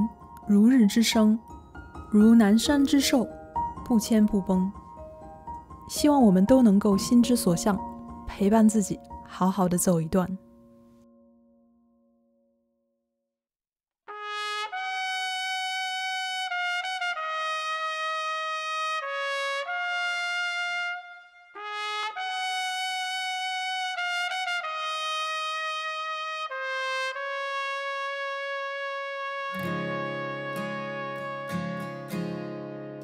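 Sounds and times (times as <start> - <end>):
slow solo trumpet melody: 14.1 - 33.0.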